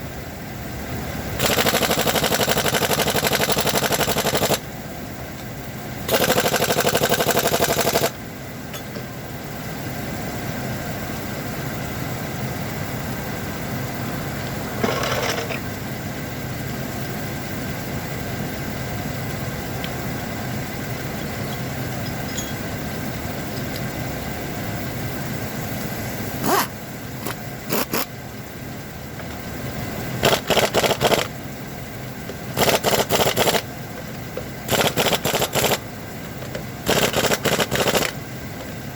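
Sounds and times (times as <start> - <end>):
vehicle engine idling: 0.0 - 38.9
impact wrench rattling: 34.7 - 35.8, 36.4 - 38.2.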